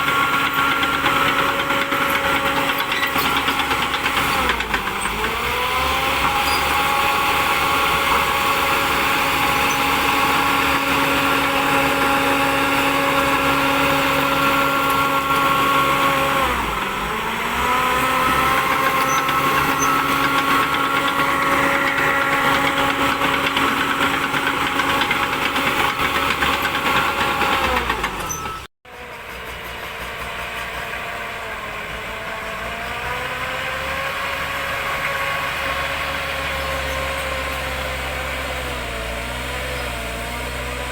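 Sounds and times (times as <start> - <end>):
bulldozer diesel engine revving: 0.0 - 40.9.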